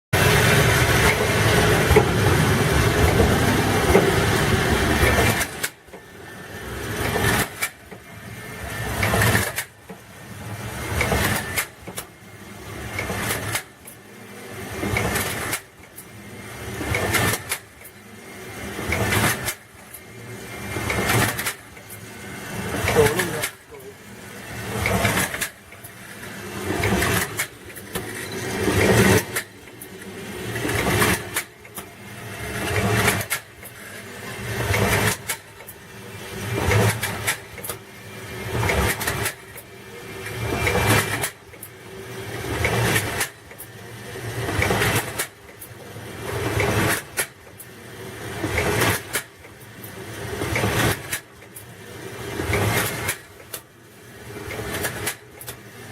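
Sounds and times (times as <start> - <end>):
machine clack: 0.2 - 53.7, 54.4 - 55.7
bottle filling machine: 0.2 - 55.9.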